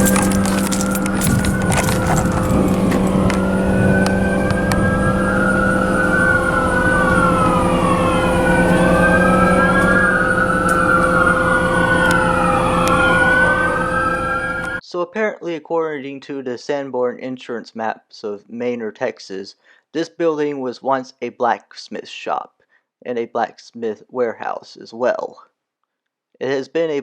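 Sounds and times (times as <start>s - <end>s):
steady low hum: 0.0s - 14.8s
wailing emergency sirens: 0.0s - 14.8s.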